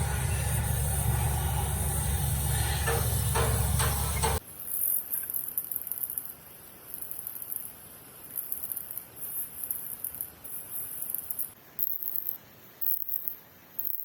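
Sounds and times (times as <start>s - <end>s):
large engine running with hiss: 0.0s - 4.4s.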